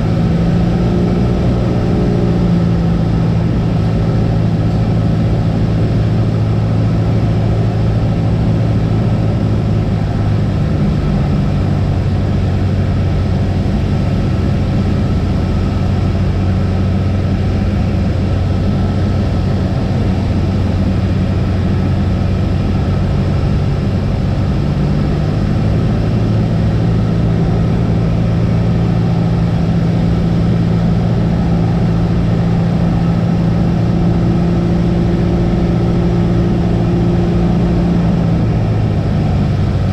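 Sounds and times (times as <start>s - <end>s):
propeller plane engine drone: 0.0s - 39.9s.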